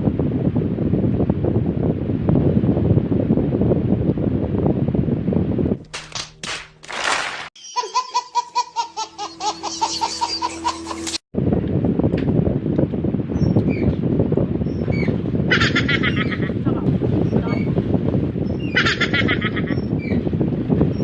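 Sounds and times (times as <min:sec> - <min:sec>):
laughter sound effect: 0:07.6 - 0:11.2, 0:15.5 - 0:16.5, 0:18.8 - 0:19.8.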